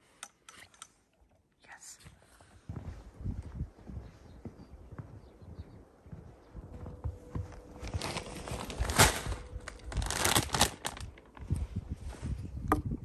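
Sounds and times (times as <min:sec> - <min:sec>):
plastic packaging crinkling: 0:07.8 - 0:11.4.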